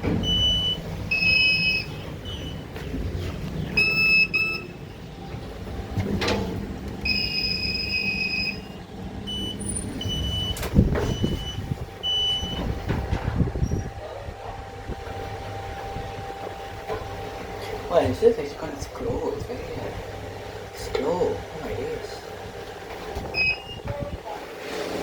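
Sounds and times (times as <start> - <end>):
lift signal beeping: 0.0 - 17.6, 23.3 - 23.9
low hum of lift machinery: 0.0 - 25.0.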